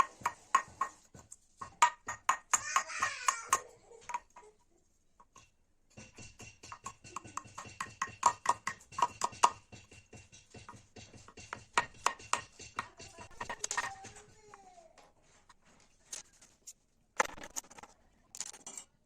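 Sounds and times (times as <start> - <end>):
sharp tool taps on workpiece: 5.3 - 14.2.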